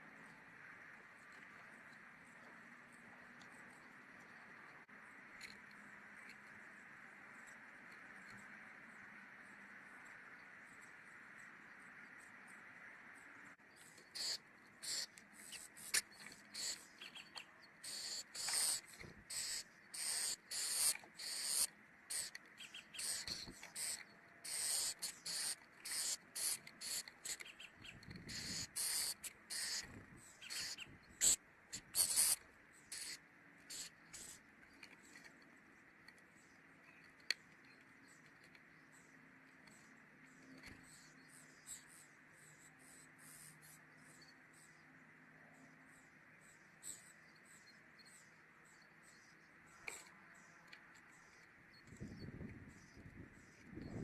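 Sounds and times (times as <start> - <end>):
hissy scratching: 13.9 - 34.4.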